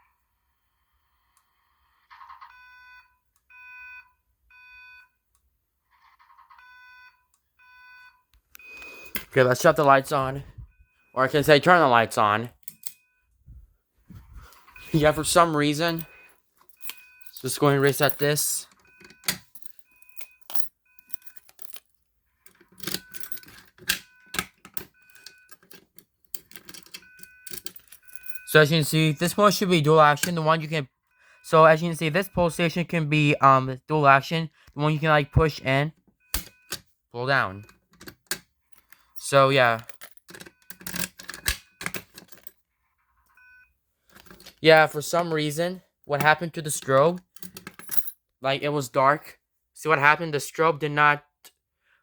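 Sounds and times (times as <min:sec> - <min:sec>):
fire alarm beeps: 0:02.4 - 0:05.2, 0:06.6 - 0:13.4, 0:14.7 - 0:21.3, 0:24.0 - 0:25.6, 0:27.0 - 0:33.0, 0:34.8 - 0:37.7, 0:43.4 - 0:43.8
faint electronic beep: 0:06.6 - 0:09.1, 0:14.7 - 0:16.3
fire alarm pull station clicks: 0:22.7 - 0:25.8, 0:36.2 - 0:36.8, 0:40.3 - 0:42.4.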